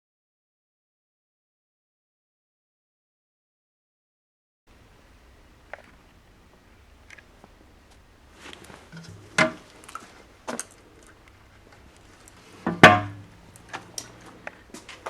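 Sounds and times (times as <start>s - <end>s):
handling knocks and clunks: 5.6s - 15.0s.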